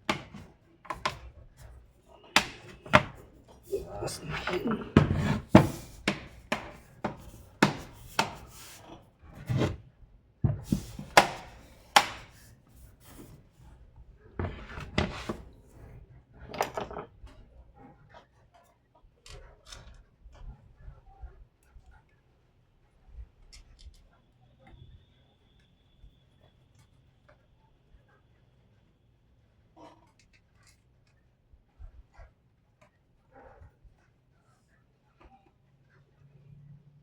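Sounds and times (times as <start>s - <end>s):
plastic laptop parts knocking: 0.1s - 1.3s, 2.2s - 8.9s, 10.5s - 13.4s.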